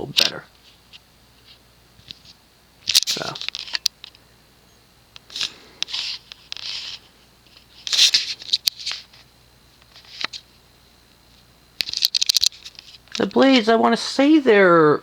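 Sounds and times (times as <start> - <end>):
close rustling and scraping: 0.6 - 3.9, 5.2 - 10.5.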